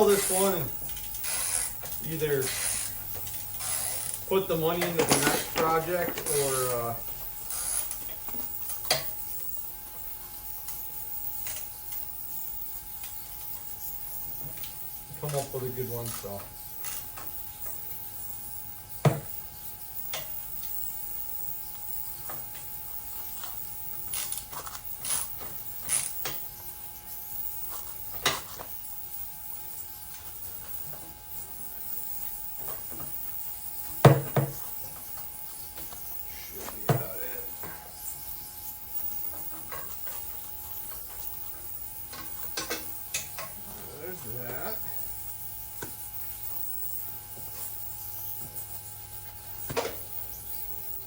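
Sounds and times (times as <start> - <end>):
hand tools clicking and clinking: 0.0 - 9.6, 13.0 - 17.9, 38.9 - 45.1.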